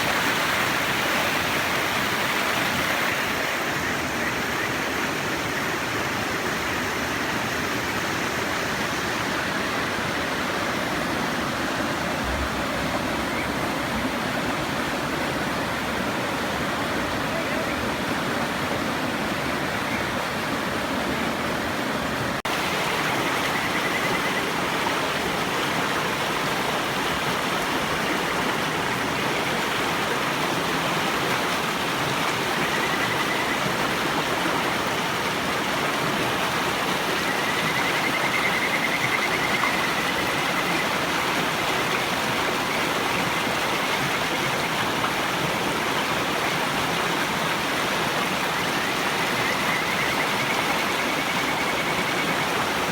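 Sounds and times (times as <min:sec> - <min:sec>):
river water flowing: 0:00.0 - 0:52.9
frogs trilling: 0:02.2 - 0:09.8, 0:22.5 - 0:45.4, 0:47.4 - 0:52.9.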